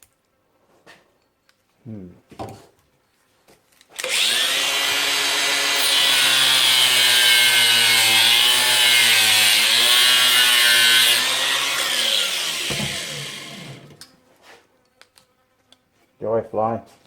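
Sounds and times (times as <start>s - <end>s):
power tool cutting plastic: 3.9s - 14.1s.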